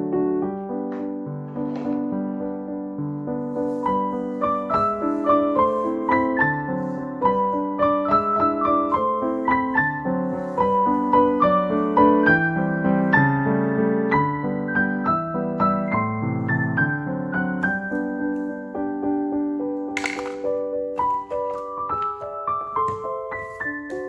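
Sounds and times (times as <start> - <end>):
gentle piano melody: 0.0 - 24.0.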